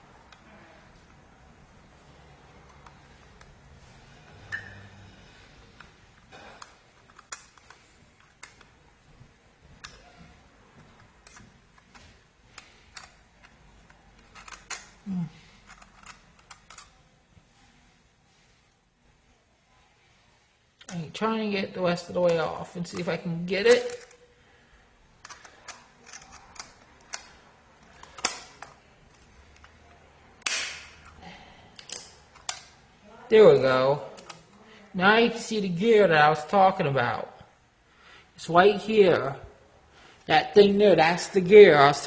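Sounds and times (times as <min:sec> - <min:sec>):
clock parts clicking and scraping: 0:06.6 - 0:08.7, 0:10.9 - 0:15.0, 0:15.6 - 0:17.0, 0:25.2 - 0:29.8.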